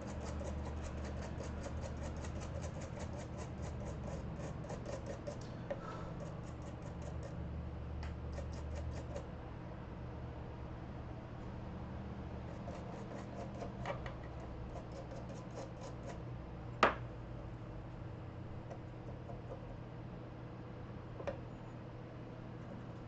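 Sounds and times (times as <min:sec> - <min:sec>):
rapid scratching ticks: 0:00.0 - 0:05.4
steady low hum: 0:00.0 - 0:23.0.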